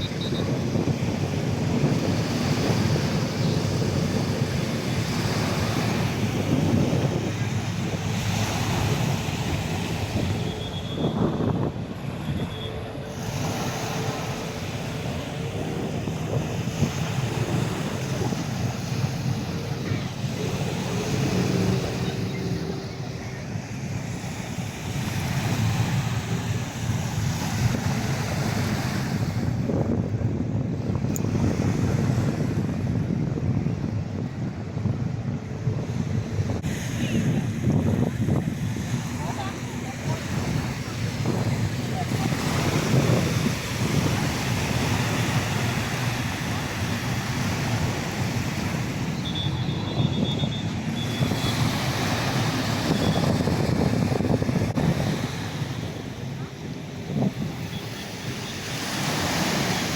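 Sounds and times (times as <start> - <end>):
rushing wash of noise: 0.0 - 59.9
wind buffeting microphone: 0.0 - 59.9
faint steady tones: 10.2 - 24.7.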